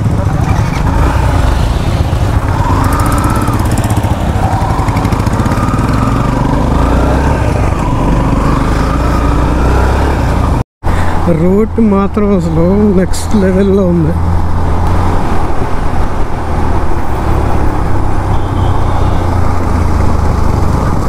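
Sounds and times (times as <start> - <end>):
motorcycle engine running: 0.0 - 10.6
wind rumble on microphone: 14.2 - 21.0.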